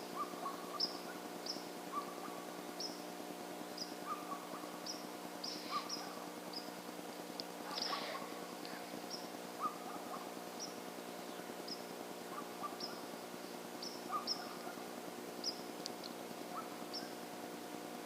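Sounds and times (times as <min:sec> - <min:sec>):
steady low hum: 0:00.0 - 0:18.0
birds chirping: 0:03.7 - 0:06.8, 0:07.5 - 0:17.2.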